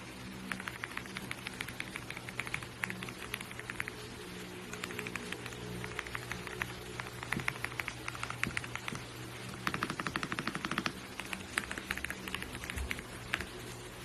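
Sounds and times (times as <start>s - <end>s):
faint steady hum: 0.0s - 14.0s
mechanical keyboard typing: 0.4s - 13.6s.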